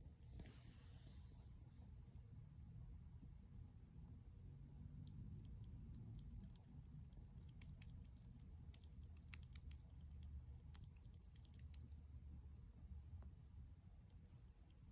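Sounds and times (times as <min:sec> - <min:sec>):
low steady background hum: 0:00.0 - 0:14.9
faint chewing: 0:04.9 - 0:12.1, 0:14.0 - 0:14.9.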